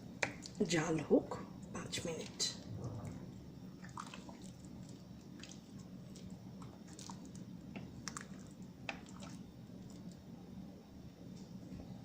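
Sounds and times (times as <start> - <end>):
steady low hum: 0.0 - 12.0
soup boiling pops and crackles: 3.8 - 10.2.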